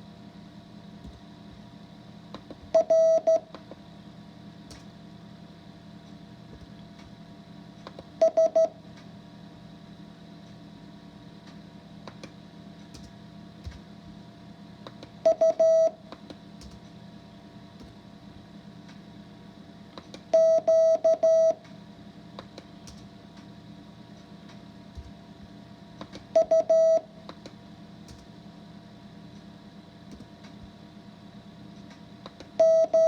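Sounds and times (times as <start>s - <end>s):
morse code beeps: 2.7s - 3.4s, 8.2s - 8.7s, 15.2s - 16.0s, 20.3s - 21.6s, 26.4s - 27.1s, 32.6s - 33.0s.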